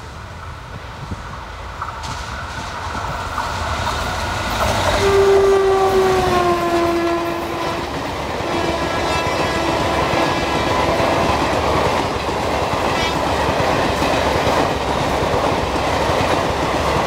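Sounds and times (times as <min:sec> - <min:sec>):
approaching train rumble: 0:00.0 - 0:17.0
locomotive horn blast: 0:05.0 - 0:11.3.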